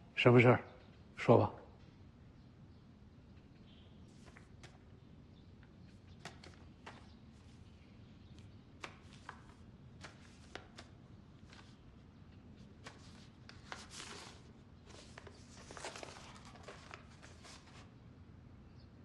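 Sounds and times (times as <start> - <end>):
soft rustles: 5.8 - 17.9.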